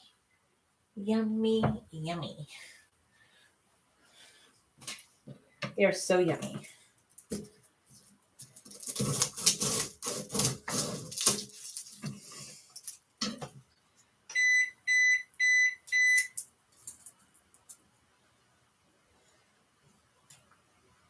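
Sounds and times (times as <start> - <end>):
electronic timer beeps: 14.3 - 16.4.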